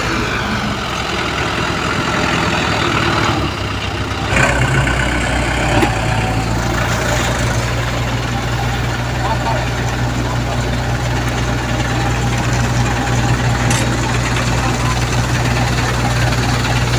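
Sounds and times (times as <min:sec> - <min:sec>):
engine knock: 0:00.0 - 0:16.9
excavator diesel engine running: 0:00.0 - 0:16.9.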